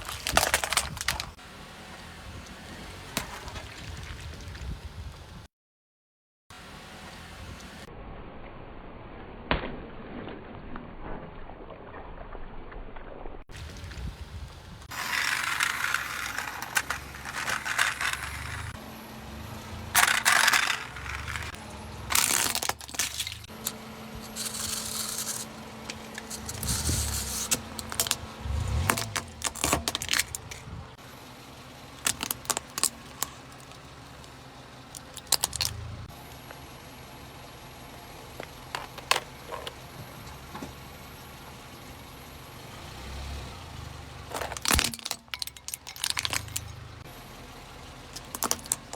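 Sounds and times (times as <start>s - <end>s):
tyres crushing crunchy objects: 0.0s - 1.4s, 14.8s - 31.0s, 31.9s - 36.6s, 44.3s - 47.1s, 48.2s - 48.9s
faint engine hum: 0.0s - 5.5s, 13.5s - 48.9s.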